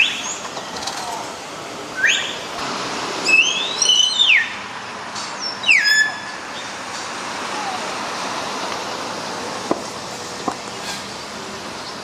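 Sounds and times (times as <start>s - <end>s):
bird whistling: 2.0s - 2.4s, 3.3s - 4.6s, 5.4s - 6.3s.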